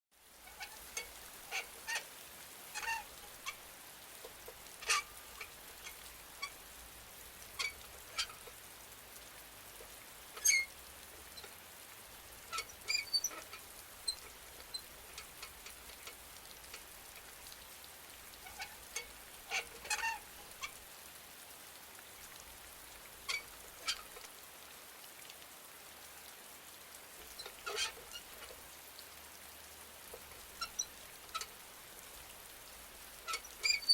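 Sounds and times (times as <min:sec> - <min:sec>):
steady rain: 0:00.1 - 0:33.9
swing creaking: 0:02.8 - 0:03.6, 0:12.5 - 0:16.8, 0:18.4 - 0:20.7, 0:27.4 - 0:28.2, 0:33.3 - 0:33.9.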